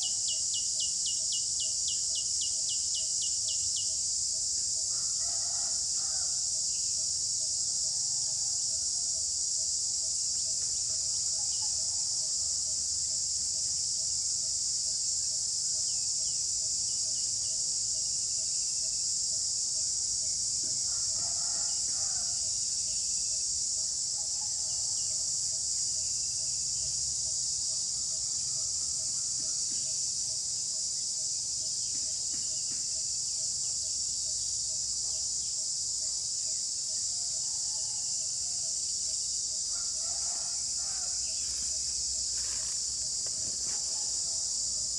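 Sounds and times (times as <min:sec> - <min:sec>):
insects chorus shrilling: 0:12.6 - 0:44.9.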